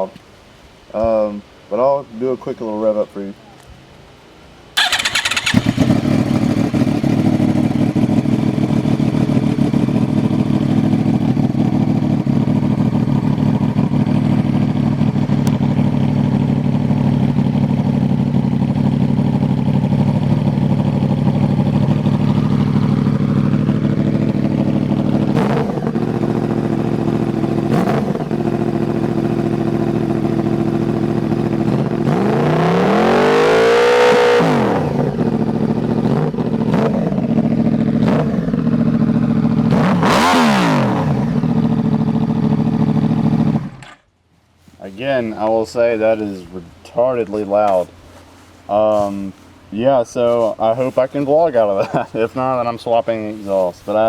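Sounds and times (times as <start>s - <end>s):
motorcycle engine idling and revving: 4.8s - 44.1s.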